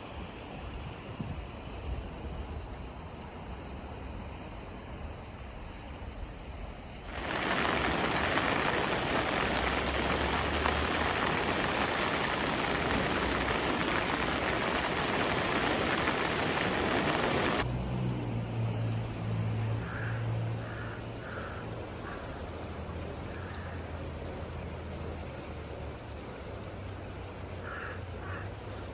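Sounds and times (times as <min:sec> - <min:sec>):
flowing water hiss: 0:06.8 - 0:17.7, 0:19.8 - 0:28.9
river water rushing: 0:07.1 - 0:17.6.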